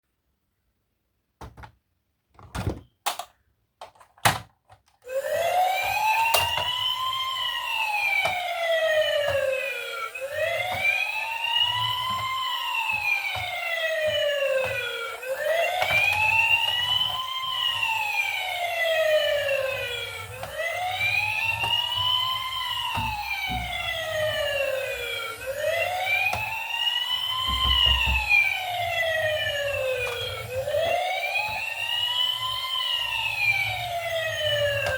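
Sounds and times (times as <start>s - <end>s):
toy siren wailing: 5.0s - 34.9s.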